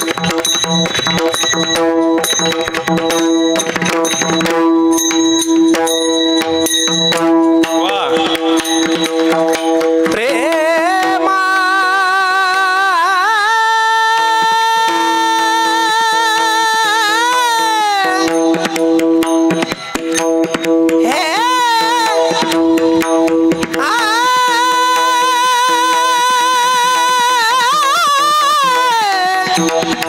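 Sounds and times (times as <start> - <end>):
drum strokes: 0.0 - 11.2
person singing long high note: 10.2 - 18.4.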